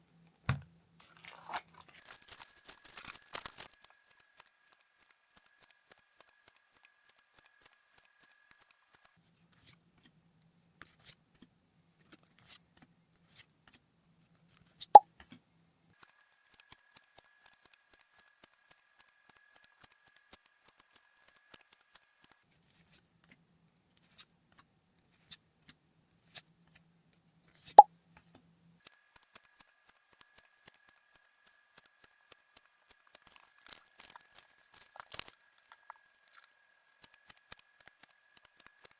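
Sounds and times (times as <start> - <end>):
foil wrapper tearing and rustling: 1.2 - 9.1, 29.2 - 38.9
cards handled with faint ticks: 1.2 - 10.2, 10.8 - 13.8, 16.0 - 26.9, 28.2 - 38.9.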